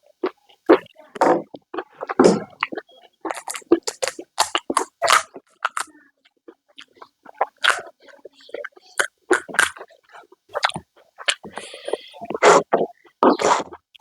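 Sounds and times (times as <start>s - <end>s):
wet chewing: 0.2s - 14.0s
crunching snack food: 3.3s - 5.9s.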